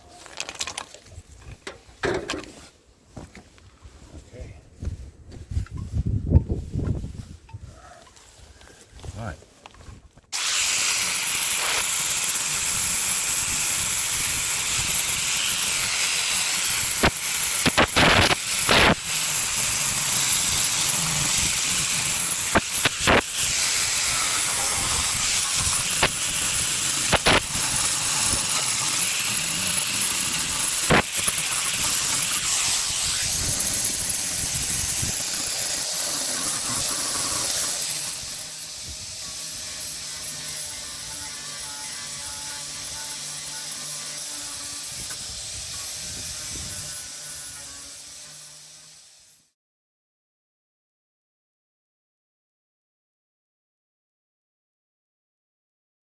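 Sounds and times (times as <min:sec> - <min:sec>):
angle grinder grinding metal: 0:10.4 - 0:49.4.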